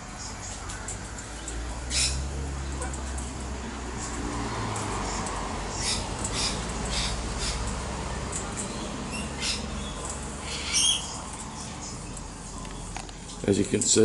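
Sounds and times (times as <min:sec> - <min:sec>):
parrots squawking: 0:01.8 - 0:03.0, 0:05.0 - 0:07.9, 0:08.6 - 0:12.0.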